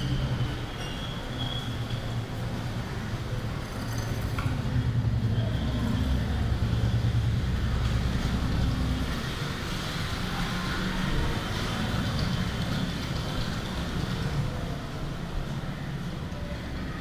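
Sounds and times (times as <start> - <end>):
rain: 4.6 - 17.0.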